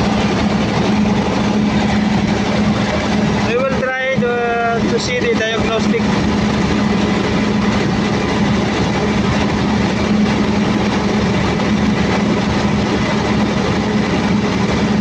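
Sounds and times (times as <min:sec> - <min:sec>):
diesel generator engine running: 0:00.0 - 0:15.0.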